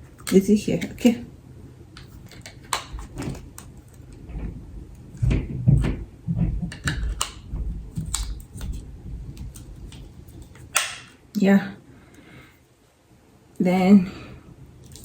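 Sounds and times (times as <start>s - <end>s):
handling rubbing noise: 2.0s - 11.2s
plastic parts clicking and knocking: 5.2s - 8.8s.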